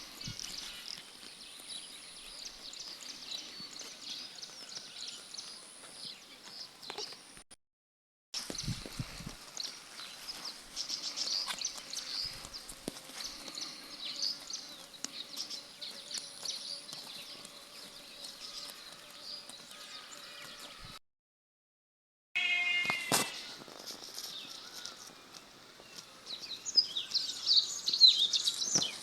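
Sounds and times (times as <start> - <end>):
birds chirping: 0.0 - 7.4, 8.4 - 21.0, 22.4 - 29.0
sheep tearing and chewing grass: 8.4 - 20.7.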